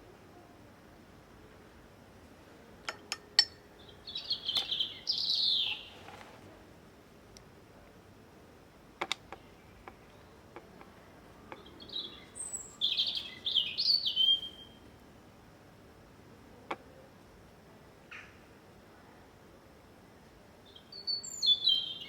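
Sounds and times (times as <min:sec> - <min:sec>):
songbird chirps and trills: 0:02.8 - 0:06.4, 0:08.3 - 0:14.9, 0:20.4 - 0:22.0
sharp clicks: 0:09.0 - 0:09.4.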